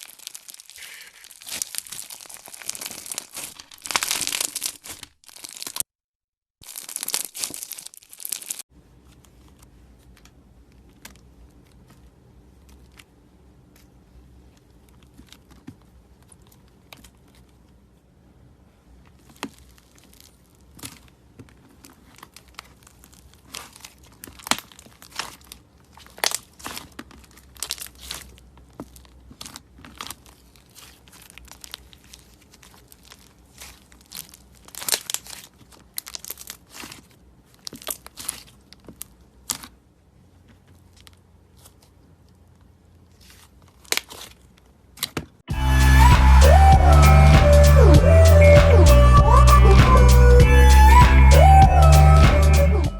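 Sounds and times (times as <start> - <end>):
slime crackling and popping: 0.0 - 5.9, 6.6 - 8.7, 19.2 - 39.7.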